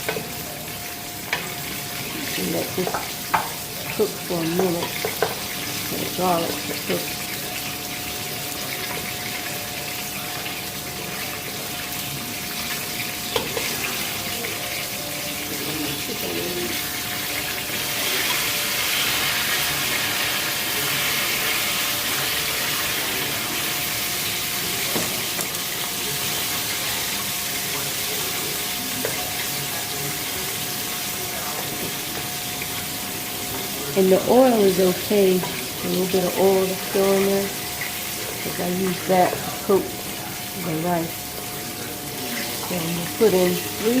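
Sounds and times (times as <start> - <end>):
food sizzling in oil: 0.0 - 44.0.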